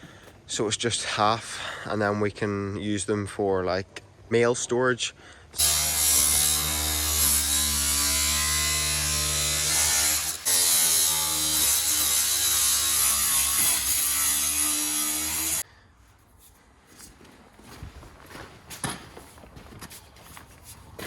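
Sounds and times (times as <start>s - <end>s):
power tool cutting plastic tank: 5.6s - 15.6s.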